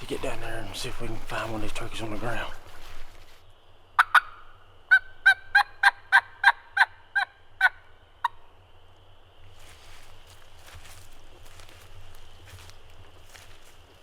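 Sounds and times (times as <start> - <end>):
turkey call yelps: 4.0 - 8.4.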